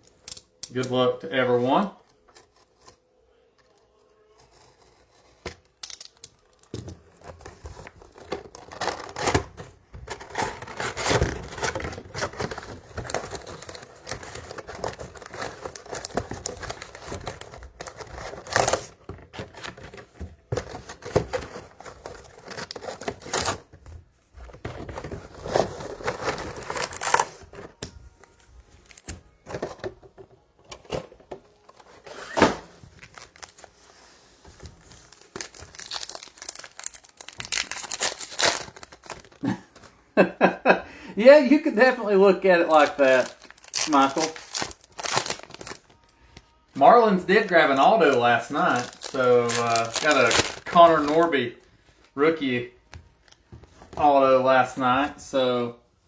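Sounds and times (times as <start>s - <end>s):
plastic wrapping tearing and crinkling: 4.4s - 6.7s, 7.3s - 23.7s, 25.1s - 27.9s, 31.7s - 33.9s, 34.6s - 40.3s, 41.3s - 46.2s, 46.8s - 51.5s.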